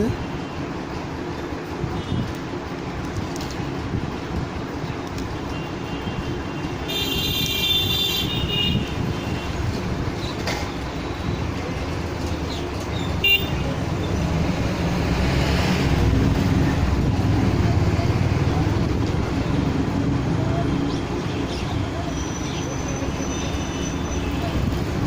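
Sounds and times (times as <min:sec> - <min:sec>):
street traffic rumbling: 0:00.0 - 0:25.0
vehicle horn: 0:05.6 - 0:09.5, 0:13.2 - 0:13.6.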